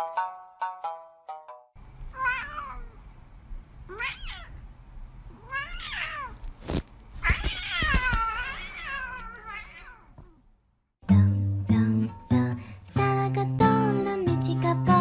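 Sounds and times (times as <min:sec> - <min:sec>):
cat meowing: 0:02.1 - 0:03.0, 0:03.9 - 0:04.6, 0:05.3 - 0:06.4, 0:07.2 - 0:10.4.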